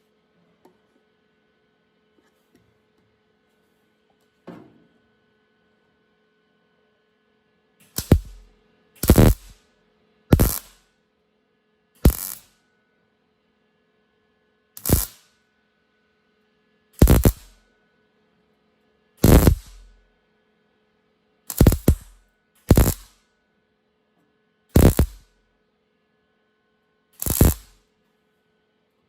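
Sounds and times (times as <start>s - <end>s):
welding arc bursts: 7.8s - 9.6s, 10.3s - 10.8s, 12.0s - 12.5s, 14.8s - 15.2s, 17.0s - 17.5s, 19.2s - 19.9s, 21.5s - 22.1s, 22.7s - 23.1s, 24.8s - 25.2s, 27.2s - 27.8s.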